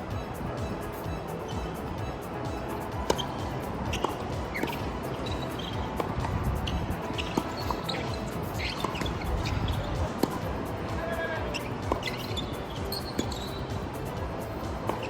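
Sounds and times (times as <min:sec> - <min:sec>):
wind buffeting microphone: 0:00.0 - 0:14.9
tennis ball struck and bouncing: 0:03.0 - 0:06.4, 0:07.1 - 0:10.5, 0:11.5 - 0:13.5.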